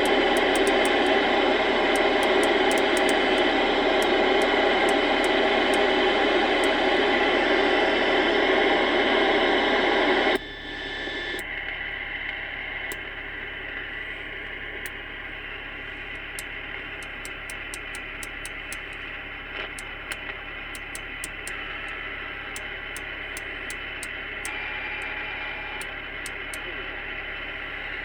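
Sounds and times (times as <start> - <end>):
light clicks: 0.0 - 1.2, 1.9 - 5.9
radio static hiss: 0.0 - 28.0.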